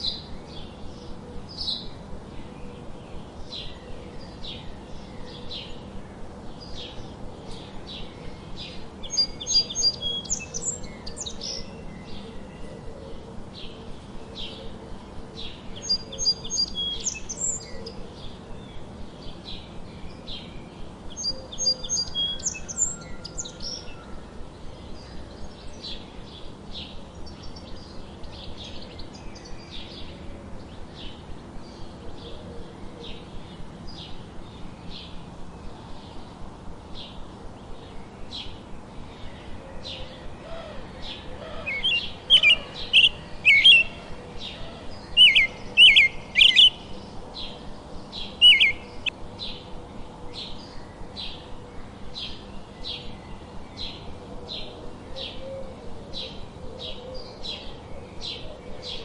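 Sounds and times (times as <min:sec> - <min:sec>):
songbirds chirping: 0:00.0 - 0:59.0
bird with sharp chirps: 0:41.7 - 0:44.0, 0:45.2 - 0:46.8, 0:48.2 - 0:49.1.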